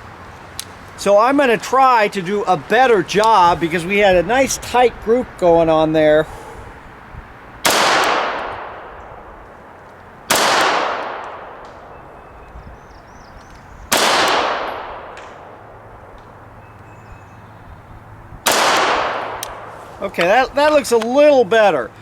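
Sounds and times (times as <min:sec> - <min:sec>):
pistol shots: 0:07.6 - 0:09.0, 0:10.3 - 0:12.0, 0:13.9 - 0:15.6, 0:18.4 - 0:19.8.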